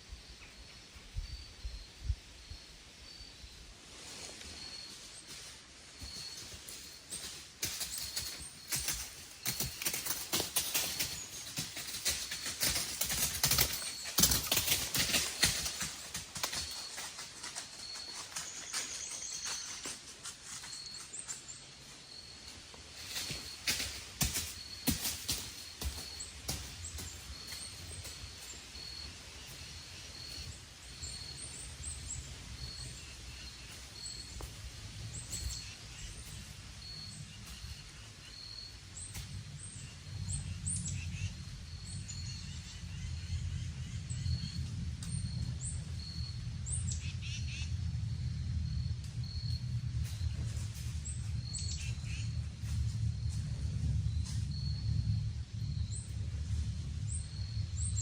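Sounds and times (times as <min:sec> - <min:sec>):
woodland birds chirping: 0:00.1 - 0:58.0
low rumble: 0:38.8 - 0:58.0.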